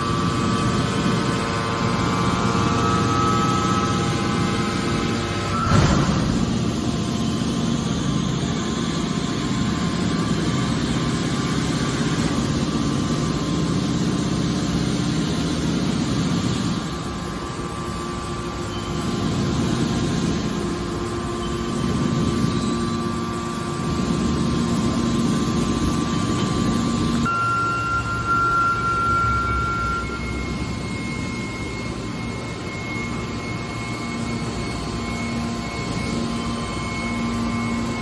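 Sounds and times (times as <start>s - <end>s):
heavy machinery humming: 0.0s - 38.0s
held machine tones: 24.8s - 38.0s.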